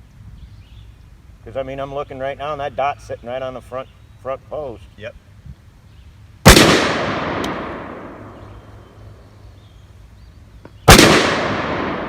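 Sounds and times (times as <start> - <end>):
loud gunshot with echo: 6.5 - 8.4, 10.9 - 12.0.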